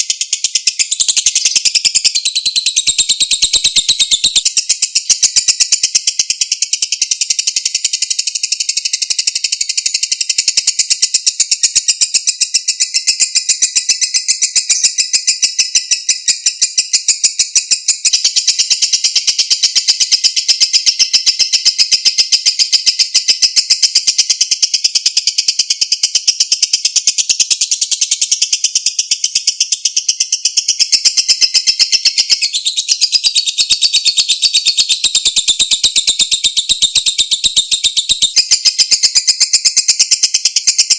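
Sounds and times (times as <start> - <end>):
lovebird shrill chattering song: 0.0 - 40.9.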